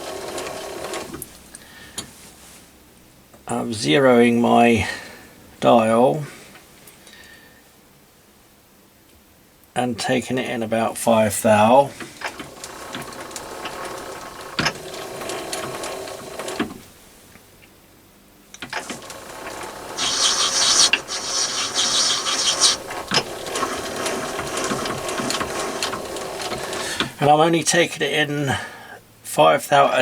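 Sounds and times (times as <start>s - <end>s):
lathe gears clattering: 0.0s - 1.3s, 12.0s - 16.8s, 18.6s - 27.4s
sharp clicks: 18.5s - 27.2s
bright hiss: 19.9s - 24.3s.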